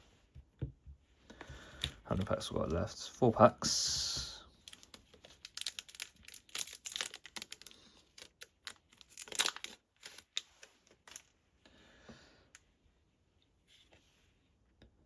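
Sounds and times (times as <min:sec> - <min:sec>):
foil pack tearing and crinkling: 0:04.7 - 0:11.3.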